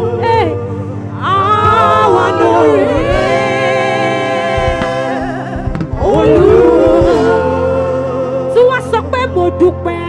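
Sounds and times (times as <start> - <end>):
woman singing with vibrato: 1.2 - 10.0
band accompaniment: 1.5 - 8.0
low drum strokes: 1.7 - 3.7, 4.5 - 7.5.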